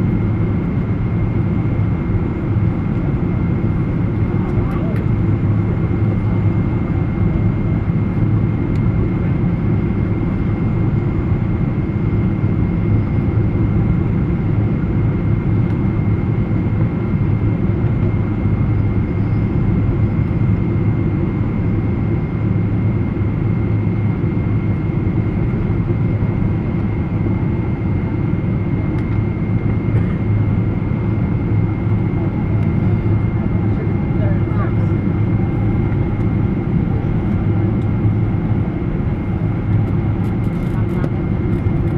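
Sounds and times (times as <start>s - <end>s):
aircraft cabin engine rumble: 0.0s - 41.9s.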